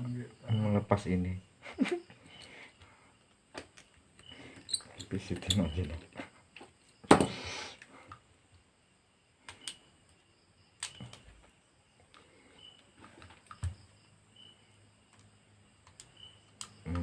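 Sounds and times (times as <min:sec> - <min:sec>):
small tools clicking and tapping: 0:03.5 - 0:07.3, 0:15.1 - 0:17.0.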